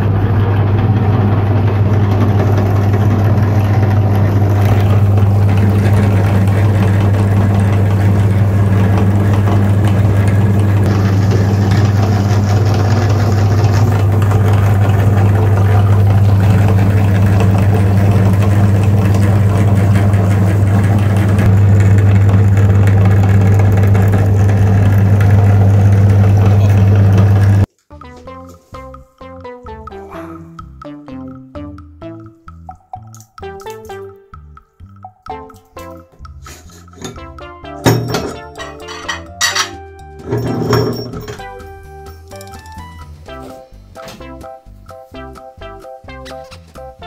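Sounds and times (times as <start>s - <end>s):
motor droning: 0.0s - 27.7s.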